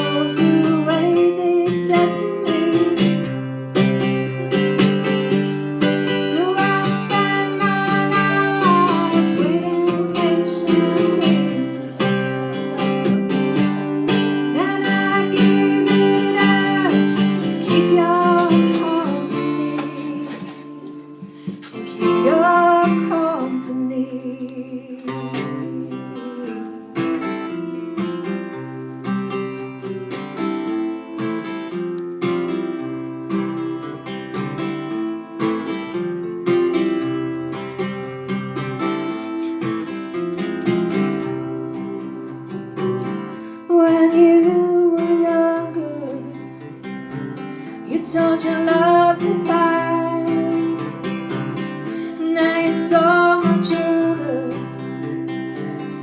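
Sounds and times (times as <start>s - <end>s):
woman singing: 0.0s - 12.7s, 13.3s - 27.8s, 43.0s - 56.0s
strummed acoustic guitar: 0.0s - 56.0s.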